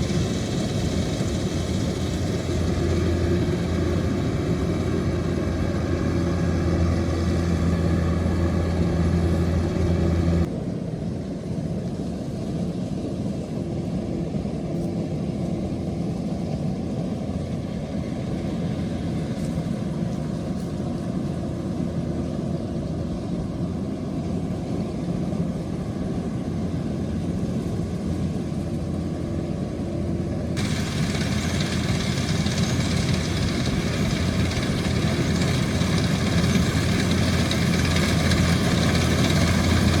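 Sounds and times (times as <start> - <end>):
diesel engine running: 0.0 - 10.5, 30.3 - 40.0.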